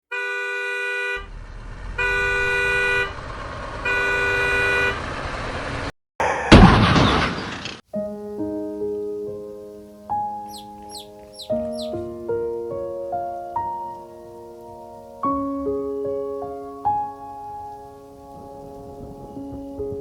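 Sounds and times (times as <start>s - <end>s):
vehicle horn honks: 0.1s - 1.3s, 2.0s - 3.2s, 3.8s - 5.0s
background noise: 6.8s - 20.0s.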